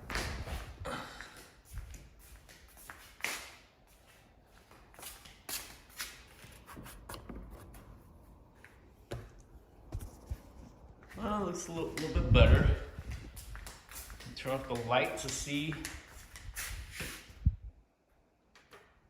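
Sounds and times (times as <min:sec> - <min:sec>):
quiet shuffling: 0:03.9 - 0:17.5.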